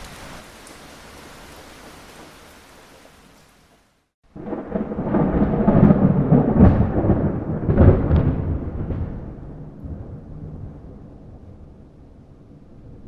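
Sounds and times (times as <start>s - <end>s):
soft steady rain: 0.0s - 13.0s
rolling thunder with cracks: 4.3s - 13.0s.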